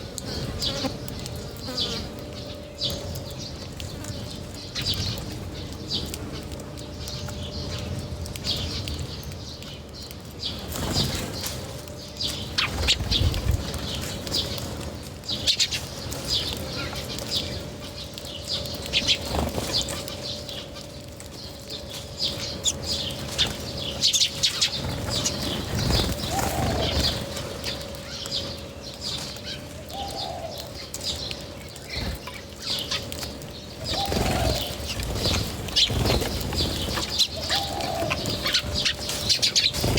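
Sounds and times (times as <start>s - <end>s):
birds chirping: 0.0s - 39.9s
wings flapping: 12.3s - 17.5s, 22.2s - 28.4s, 32.9s - 39.9s
rising and falling bird calls: 32.0s - 39.9s.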